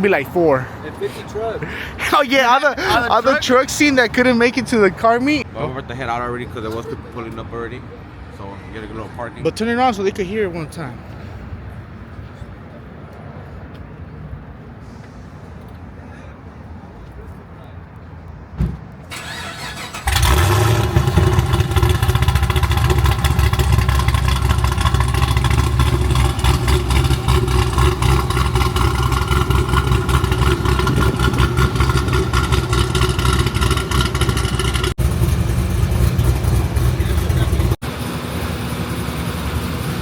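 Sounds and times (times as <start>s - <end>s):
car engine fast idle: 19.1s - 37.8s.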